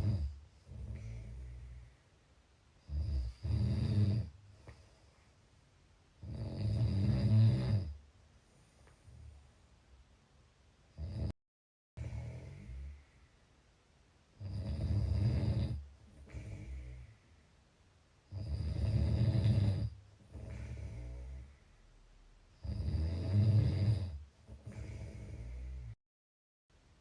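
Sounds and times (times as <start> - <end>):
person snoring: 0.0 - 1.8, 2.8 - 4.4, 6.2 - 8.0, 11.0 - 11.4, 12.0 - 13.2, 14.4 - 17.2, 18.3 - 21.7, 22.6 - 26.0
soft breath: 0.0 - 2.4, 4.4 - 5.6, 12.0 - 13.7, 16.0 - 17.7, 20.2 - 22.1, 24.5 - 26.0.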